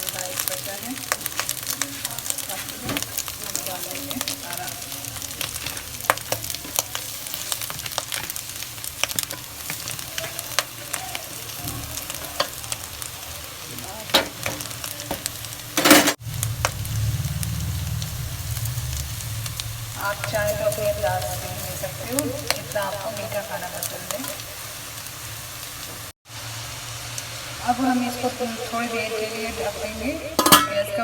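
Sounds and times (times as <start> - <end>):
food sizzling in ghee: 0.0 - 31.0.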